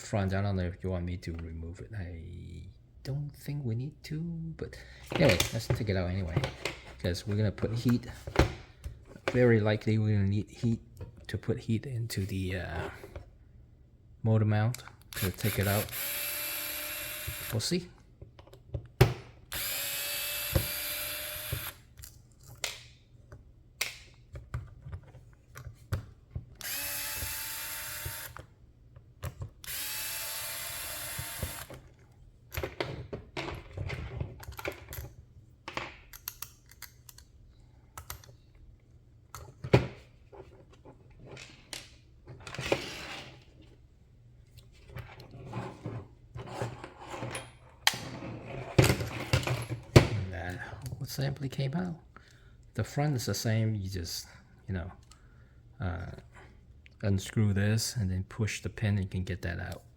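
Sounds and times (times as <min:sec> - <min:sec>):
electric screwdriver running: 0:15.2 - 0:17.6, 0:19.5 - 0:21.8, 0:26.6 - 0:28.4, 0:29.6 - 0:31.7
small parts clicking and tapping: 0:35.7 - 0:37.3.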